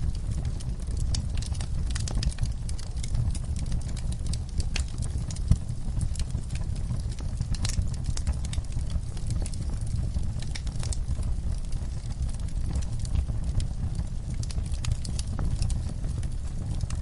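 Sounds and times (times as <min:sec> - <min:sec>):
campfire crackling and popping: 0:00.0 - 0:17.0
steady low rumble: 0:00.0 - 0:17.0.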